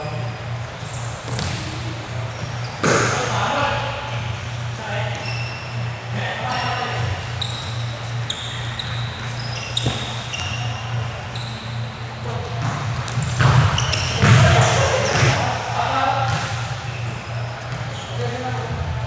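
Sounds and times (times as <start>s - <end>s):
players' voices: 0.0s - 19.0s
shoes squeaking on floor: 0.0s - 19.0s
steady low hum: 0.0s - 19.0s
ball hitting floor: 12.6s - 15.5s.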